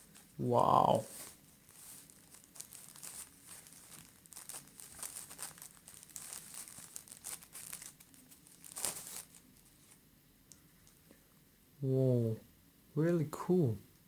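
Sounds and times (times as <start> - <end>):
packaging crinkling and rustling: 1.1 - 10.0.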